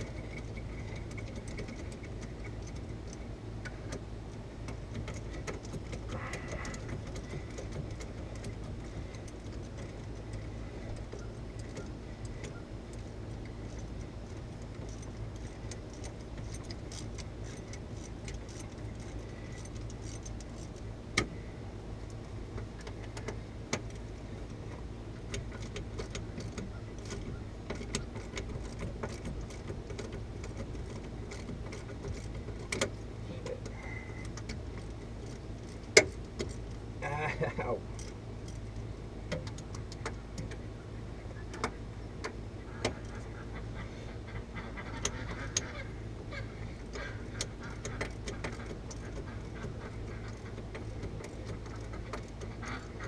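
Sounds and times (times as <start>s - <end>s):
steady low hum: 0.0s - 53.0s
hand ratchet clicking: 14.7s - 21.3s, 25.3s - 33.0s.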